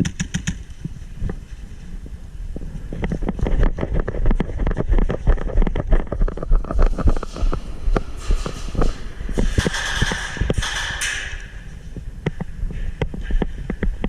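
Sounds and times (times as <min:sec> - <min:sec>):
sharp knocks and clatters: 0:00.0 - 0:01.4, 0:03.0 - 0:14.0
wind buffeting microphone: 0:00.6 - 0:14.0.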